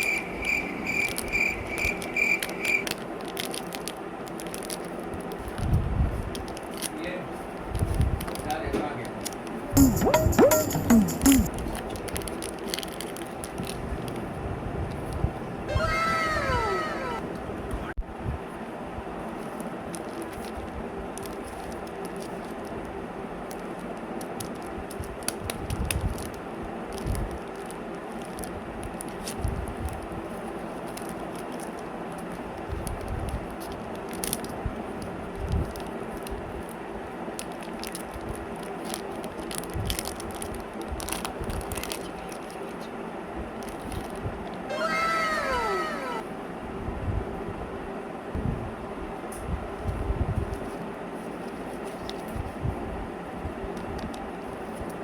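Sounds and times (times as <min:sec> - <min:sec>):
plastic wrappers crinkling: 0:00.0 - 0:09.6, 0:11.5 - 0:14.3, 0:19.4 - 0:36.7, 0:37.3 - 0:42.8, 0:43.6 - 0:44.2.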